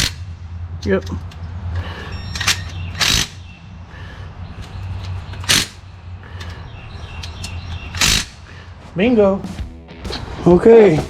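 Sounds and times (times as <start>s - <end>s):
low hum: 8.7s - 11.0s.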